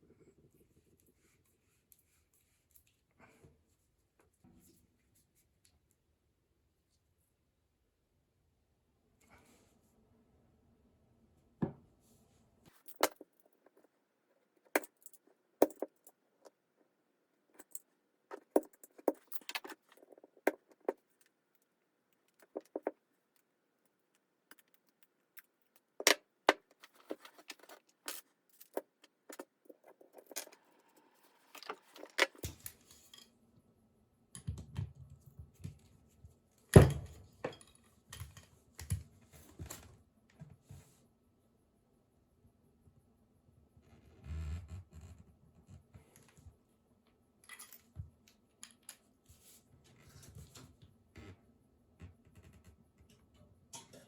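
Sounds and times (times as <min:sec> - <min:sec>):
handling knocks and thumps: 0:22.4 - 0:23.0.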